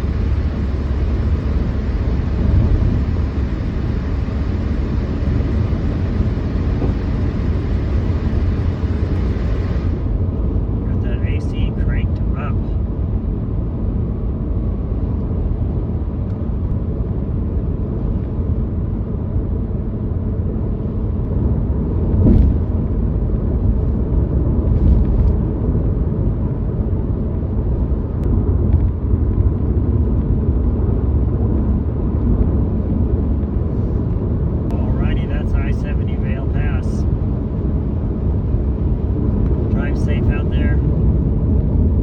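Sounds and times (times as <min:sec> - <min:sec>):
car road and engine rumble: 0:00.0 - 0:42.0
brief thump: 0:22.2 - 0:22.7.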